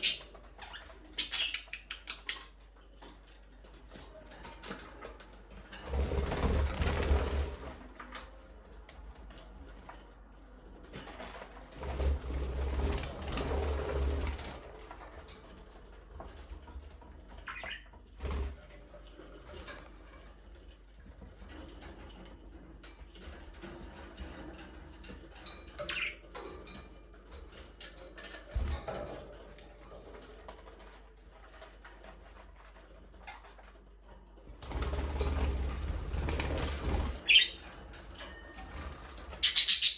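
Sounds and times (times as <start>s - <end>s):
budgerigars chirping and chattering: 0.0s - 2.5s, 17.5s - 17.8s, 25.8s - 26.2s, 37.2s - 37.6s, 39.4s - 39.9s.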